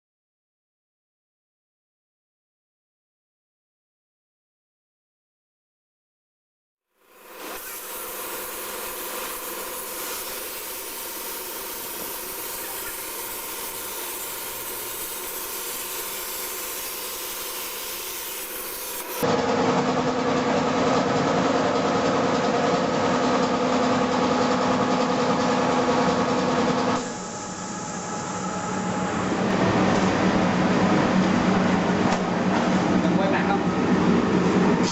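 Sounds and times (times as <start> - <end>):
plasma cutter hissing: 7.0 - 19.2
steady whine: 27.0 - 34.9.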